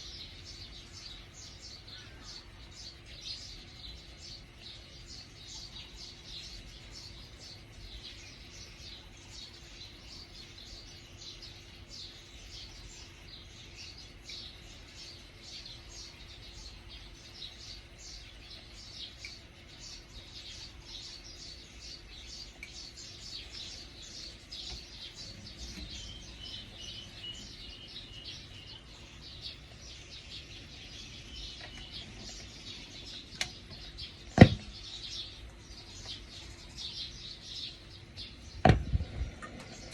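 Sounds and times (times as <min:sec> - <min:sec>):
birds chirping: 0:00.0 - 0:39.9
sharp knocks: 0:34.4 - 0:34.8.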